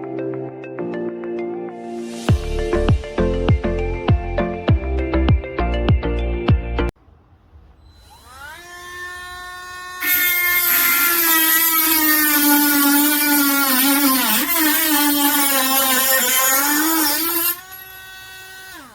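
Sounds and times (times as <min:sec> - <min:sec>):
rotary tool whining: 0:07.7 - 0:18.9
rotary tool grinding workpiece: 0:07.8 - 0:18.9.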